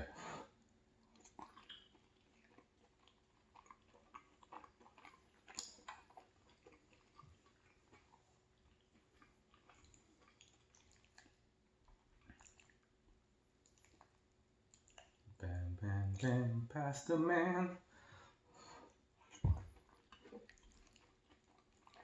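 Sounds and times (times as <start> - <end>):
person chewing food: 0.4 - 15.3, 18.3 - 22.0
small mouth clicks and smacks: 1.0 - 13.0, 13.6 - 15.3, 19.2 - 22.0.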